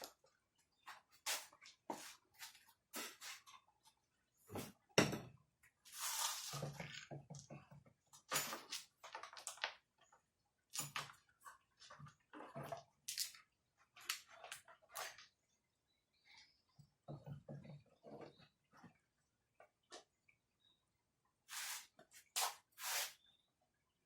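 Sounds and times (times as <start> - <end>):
scraping rustle: 5.9 - 6.8
tools and small parts clattering: 5.9 - 15.3.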